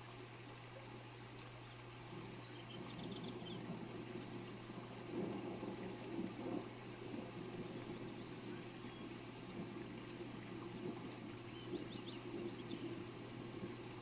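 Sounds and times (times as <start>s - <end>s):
steady rain hiss: 0.0s - 14.0s
faint bird chirps: 1.6s - 3.7s, 7.6s - 10.0s, 11.4s - 13.1s.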